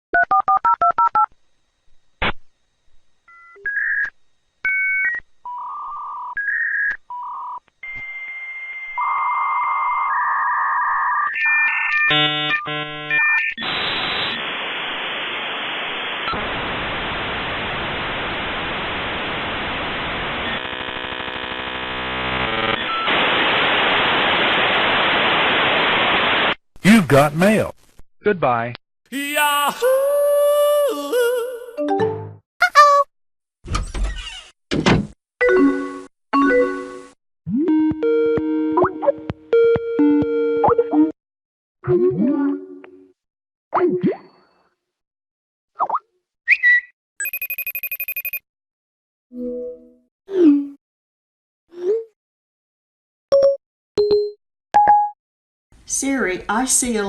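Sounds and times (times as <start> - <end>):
touch-tone dialing: 47.2 - 48.4.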